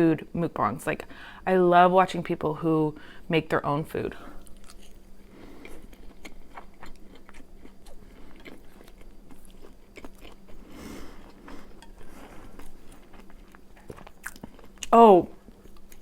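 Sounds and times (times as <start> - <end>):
person chewing: 4.4 - 16.0.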